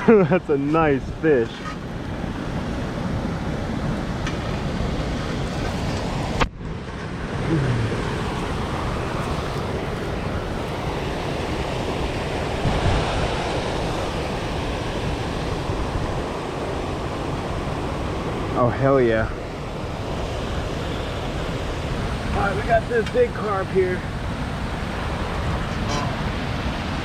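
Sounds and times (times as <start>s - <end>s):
wind buffeting microphone: 0.0s - 27.0s.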